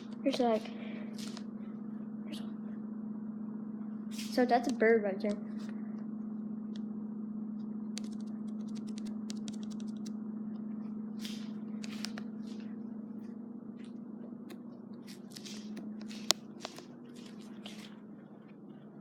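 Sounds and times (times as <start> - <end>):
steady low hum: 0.0 - 19.0
clicks scrapes and rustles: 8.0 - 10.1, 11.2 - 12.7, 15.0 - 18.0.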